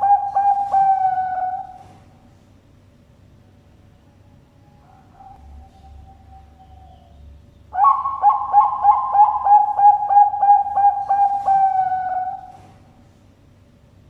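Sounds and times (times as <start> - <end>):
dove cooing: 0.0 - 2.1, 7.8 - 12.8.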